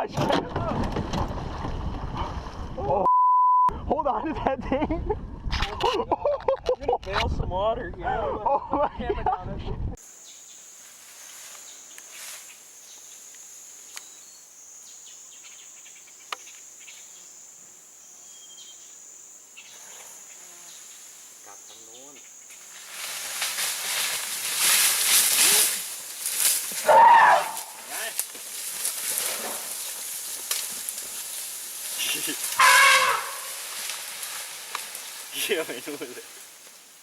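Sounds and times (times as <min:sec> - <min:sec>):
insects droning: 0:10.0 - 0:37.0
rushing hiss: 0:22.6 - 0:37.0.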